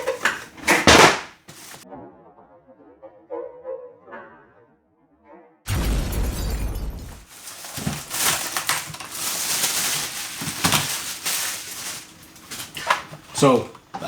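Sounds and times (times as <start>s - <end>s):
packaging crinkling and rustling: 0.0s - 1.8s, 7.2s - 13.9s.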